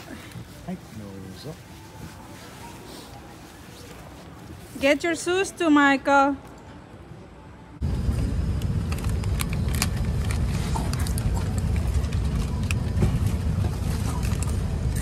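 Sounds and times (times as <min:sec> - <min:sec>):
airliner cabin engine rumble: 0:07.8 - 0:15.0.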